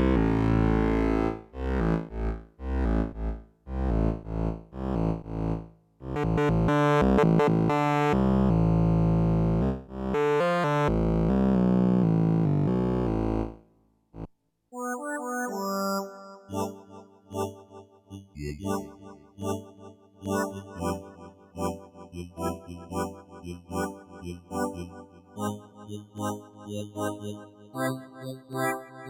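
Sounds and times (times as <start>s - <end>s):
synthesizer notes and chords: 14.8s - 17.8s.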